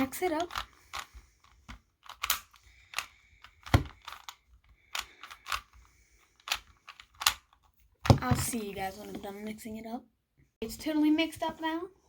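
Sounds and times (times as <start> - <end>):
puzzle cube clicking: 0.0 - 7.7.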